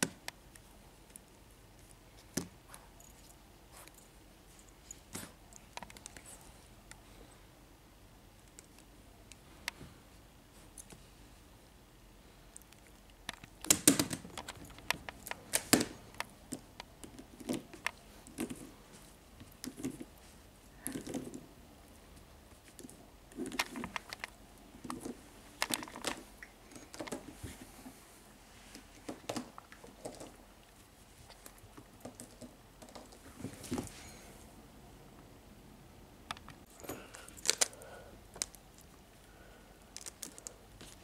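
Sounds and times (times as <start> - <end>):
puppy playing with plastic cube: 12.8 - 18.8, 19.4 - 20.2, 20.8 - 21.5, 22.5 - 27.4, 36.3 - 38.9, 39.9 - 41.0.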